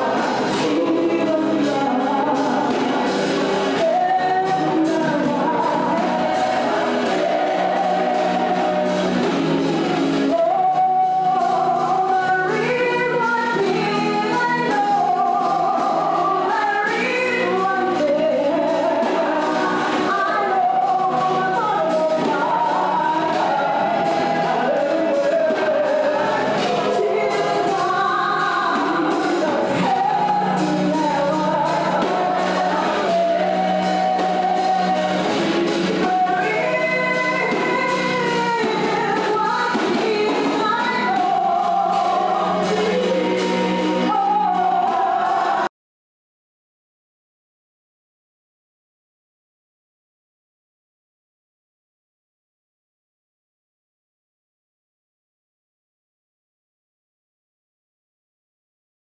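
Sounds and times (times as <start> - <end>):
gospel choir singing: 0.0 - 45.7.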